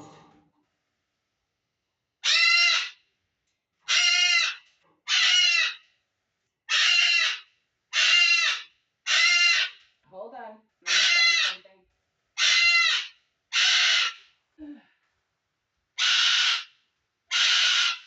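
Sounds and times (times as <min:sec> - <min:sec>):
bird screaming harshly: 0:02.2 - 0:03.0, 0:03.9 - 0:05.8, 0:06.7 - 0:09.8, 0:10.9 - 0:11.6, 0:12.4 - 0:14.2, 0:16.0 - 0:16.7, 0:17.3 - 0:18.0.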